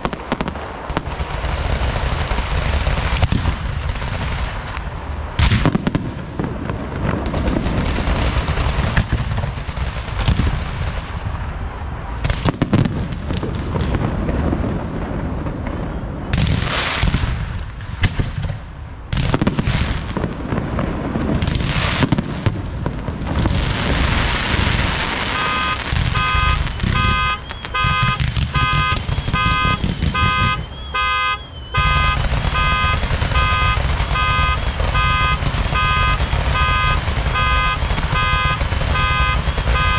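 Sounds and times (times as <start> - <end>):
fireworks bangs and crackling: 0.0 - 39.9
electronic alarm beeping: 25.3 - 39.9.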